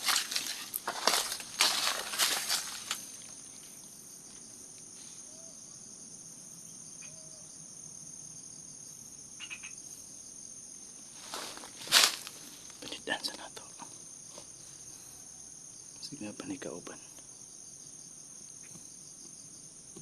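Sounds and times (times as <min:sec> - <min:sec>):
footsteps through dry vegetation: 0:00.0 - 0:03.7, 0:11.0 - 0:12.8
crickets chirring: 0:00.0 - 0:20.0.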